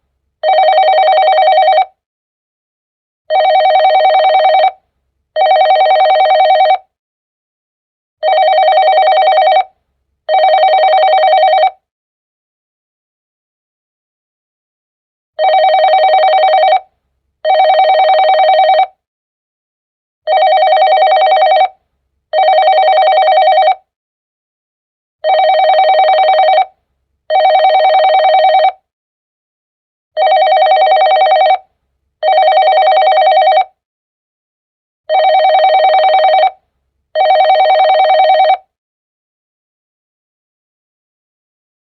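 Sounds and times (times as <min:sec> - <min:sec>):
warbling phone ringtone: 0:00.4 - 0:01.9, 0:03.3 - 0:04.8, 0:05.4 - 0:06.8, 0:08.2 - 0:09.7, 0:10.3 - 0:11.8, 0:15.4 - 0:16.8, 0:17.5 - 0:18.9, 0:20.3 - 0:21.8, 0:22.4 - 0:23.8, 0:25.2 - 0:26.7, 0:27.3 - 0:28.8, 0:30.2 - 0:31.6, 0:32.2 - 0:33.7, 0:35.1 - 0:36.6, 0:37.2 - 0:38.7.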